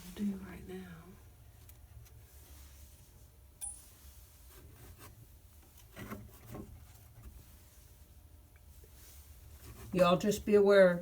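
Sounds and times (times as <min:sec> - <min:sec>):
brush rubbing on pipe: 0:06.4 - 0:10.3.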